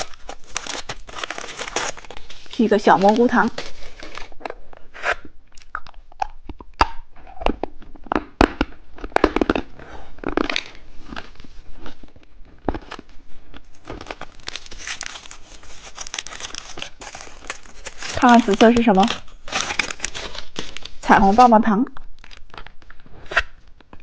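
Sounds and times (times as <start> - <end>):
wrapper crinkling: 0.0 - 4.5, 9.0 - 23.6
candy crunching: 0.0 - 21.5.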